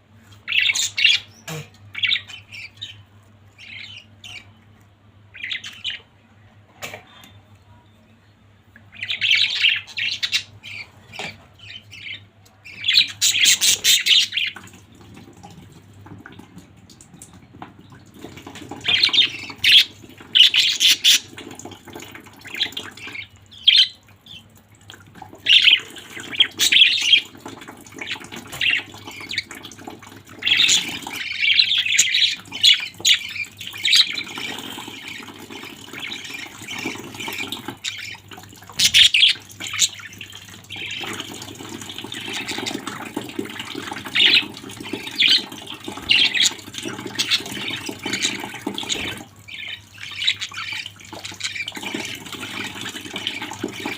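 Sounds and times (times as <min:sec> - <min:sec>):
budgerigars chirping and chattering: 0:00.4 - 0:04.6, 0:05.3 - 0:06.1, 0:08.9 - 0:14.7, 0:18.2 - 0:24.5, 0:25.4 - 0:53.9.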